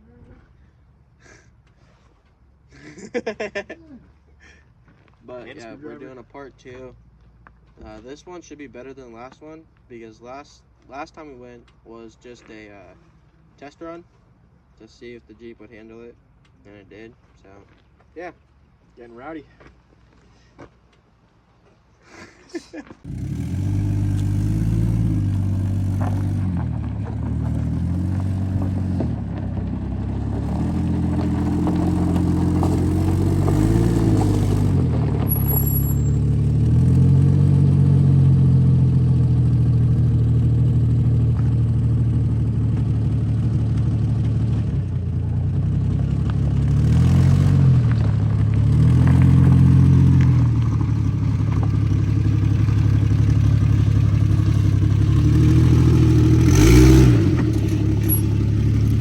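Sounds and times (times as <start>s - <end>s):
off-road vehicle engine revving: 23.0s - 59.0s.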